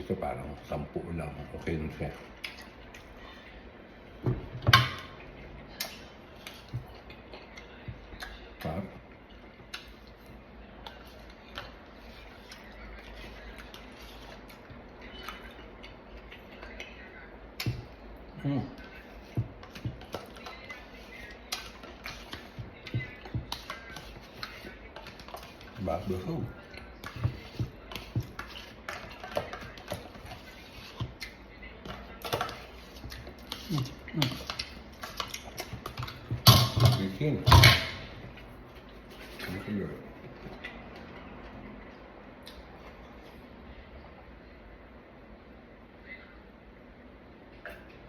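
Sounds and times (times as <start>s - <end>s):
person chewing fruit: 5.7s - 36.5s.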